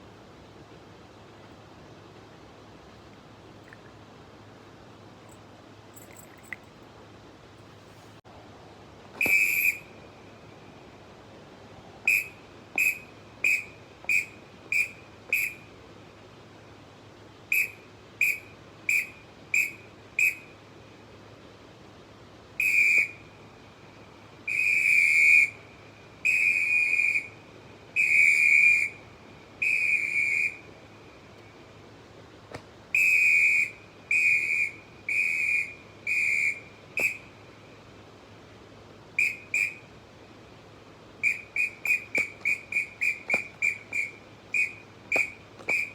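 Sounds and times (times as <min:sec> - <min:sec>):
referee whistle blasts: 0:09.2 - 0:10.0, 0:12.1 - 0:15.6, 0:17.5 - 0:20.5, 0:22.6 - 0:23.2, 0:24.5 - 0:25.6, 0:26.2 - 0:27.4, 0:28.0 - 0:29.0, 0:29.6 - 0:30.7, 0:32.9 - 0:37.3, 0:39.2 - 0:39.8, 0:41.2 - 0:45.9.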